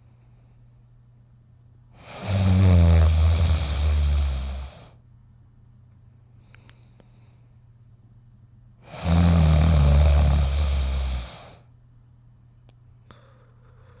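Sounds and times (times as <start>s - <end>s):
cartoon dog snoring: 2.0s - 5.0s, 8.8s - 11.6s.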